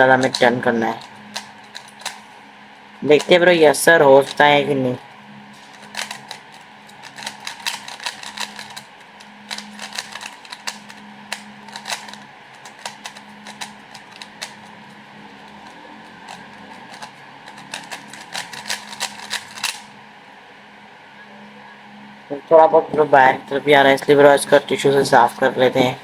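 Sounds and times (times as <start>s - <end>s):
speed cube plastic clicking: 0.2s - 2.4s, 5.6s - 20.0s.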